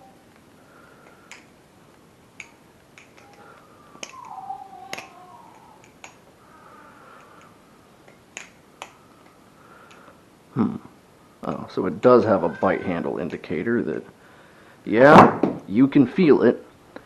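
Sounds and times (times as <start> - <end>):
butterfly knife clicking: 1.0 - 1.6, 2.4 - 6.3.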